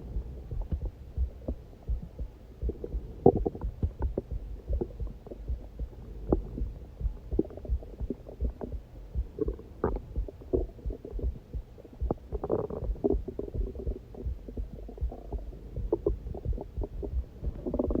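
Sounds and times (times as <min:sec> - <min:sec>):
stomach growling: 0:02.6 - 0:05.6, 0:06.3 - 0:11.4, 0:12.0 - 0:18.0.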